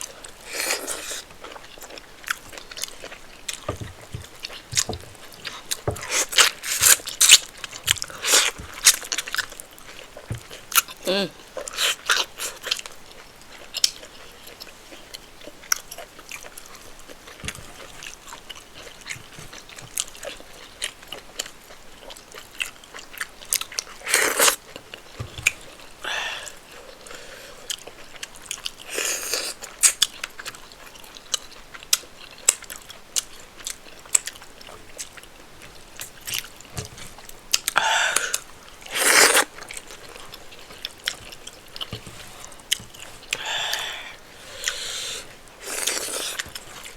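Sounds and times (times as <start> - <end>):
chewing with wet mouth clicks: 0.0 - 11.0, 11.6 - 25.8, 37.2 - 41.9.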